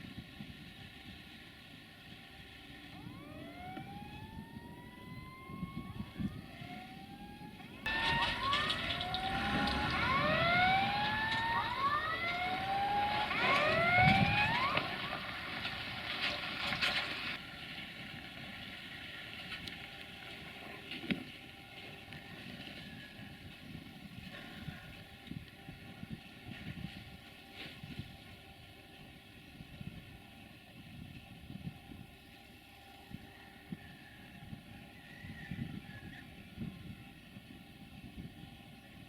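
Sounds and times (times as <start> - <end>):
high-pitched rising squeals: 3.0 - 15.6
train rumbling past: 7.7 - 17.4.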